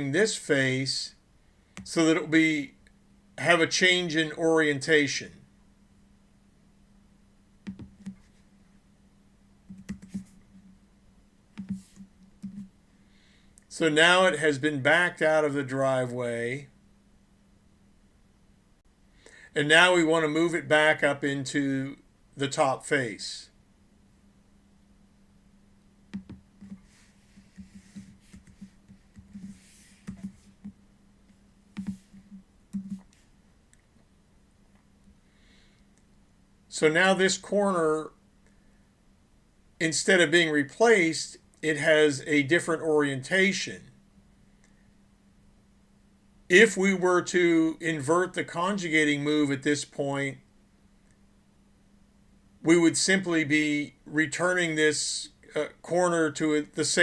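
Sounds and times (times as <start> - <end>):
faint steady hum: 0.0 - 57.0.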